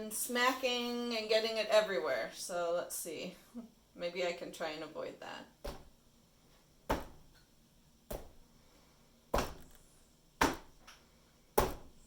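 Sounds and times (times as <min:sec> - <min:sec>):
plastic mallet slapping wet paint: 0:10.4 - 0:10.9.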